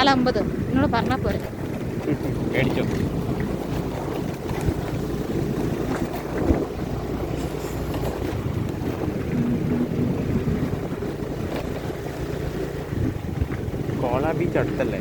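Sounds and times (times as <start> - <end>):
vehicle engine running: 0.0 - 15.0
wind buffeting microphone: 0.0 - 15.0.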